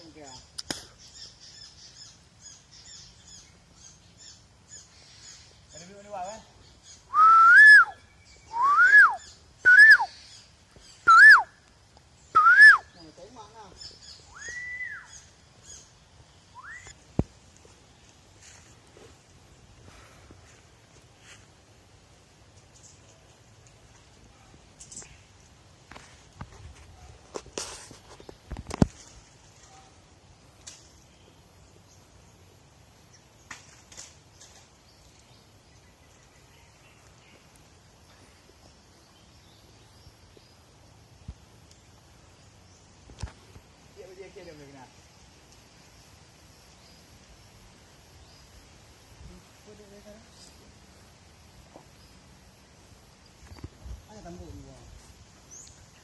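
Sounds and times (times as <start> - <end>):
bird whistling fluty calls: 6.8 - 11.6, 12.3 - 13.0, 13.9 - 15.9, 16.5 - 17.0
faint clicks or rustles: 22.5 - 31.1, 33.4 - 34.9.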